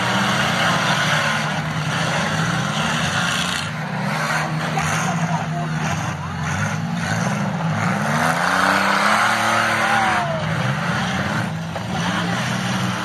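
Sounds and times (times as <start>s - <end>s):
car engines revving: 0.0s - 13.0s
spinning tires rushing: 0.0s - 13.0s.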